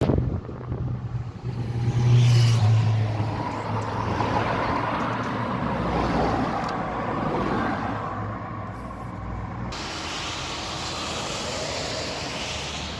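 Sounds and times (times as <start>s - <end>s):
diesel engine starting and idling: 3.0s - 12.9s.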